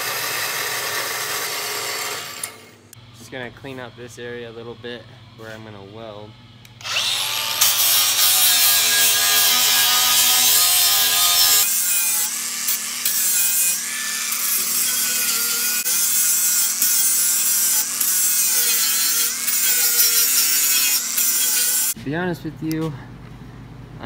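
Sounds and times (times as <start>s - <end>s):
power grinder on steel: 0.0s - 2.9s, 6.8s - 22.0s.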